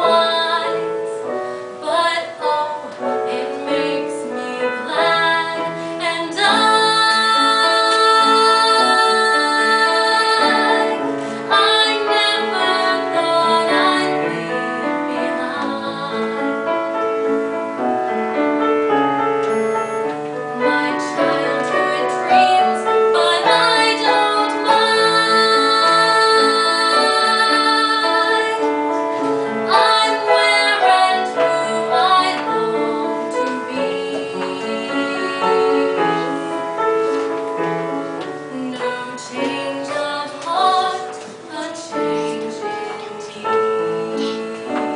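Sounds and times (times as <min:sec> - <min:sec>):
piano accompaniment: 0:00.0 - 0:44.9
woman singing slow song: 0:01.8 - 0:16.4, 0:20.6 - 0:28.6, 0:29.7 - 0:36.4, 0:38.5 - 0:44.9.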